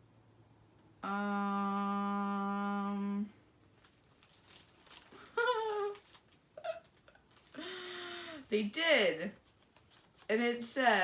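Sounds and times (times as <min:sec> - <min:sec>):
paper packaging crinkling: 0:03.7 - 0:08.7, 0:09.4 - 0:10.3.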